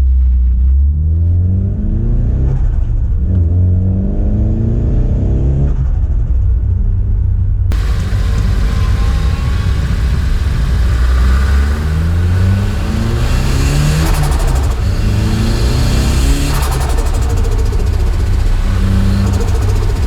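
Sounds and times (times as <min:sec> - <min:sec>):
car engine accelerating: 0:07.7 - 0:20.0
turbo flutter chatter: 0:07.7 - 0:20.0.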